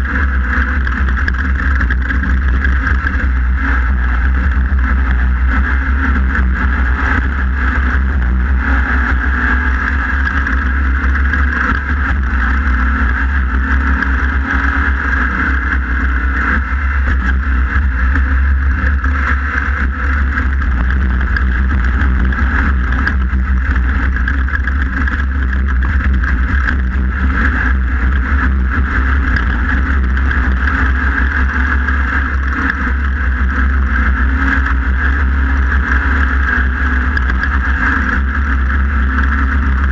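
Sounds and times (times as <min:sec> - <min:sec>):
buggy engine droning: 0:00.0 - 0:39.9
wind and terrain rumble: 0:00.0 - 0:39.9.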